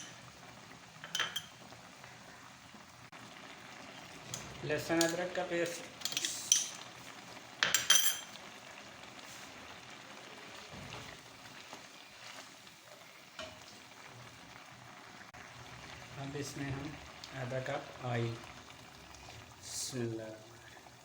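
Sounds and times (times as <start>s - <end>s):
faint sizzle of cooking: 0.0s - 21.0s
metal spoon clinking on a pot: 1.0s - 1.6s, 5.0s - 6.8s, 7.6s - 8.4s.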